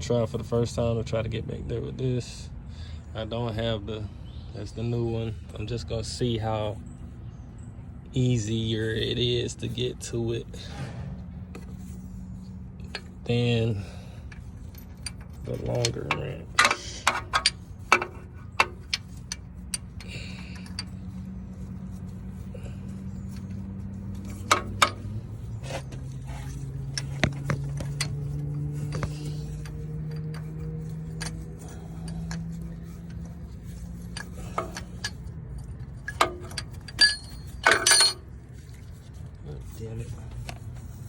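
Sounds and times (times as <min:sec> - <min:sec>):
steady low hum: 0:00.0 - 0:41.0
wrench clinking on metal: 0:12.8 - 0:38.9.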